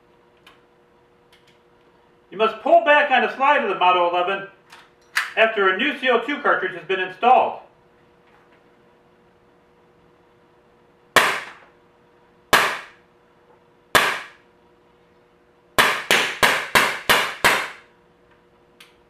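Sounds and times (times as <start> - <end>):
bb pistol shots: 11.2 - 11.6, 12.6 - 13.0, 14.0 - 14.4, 15.8 - 17.8.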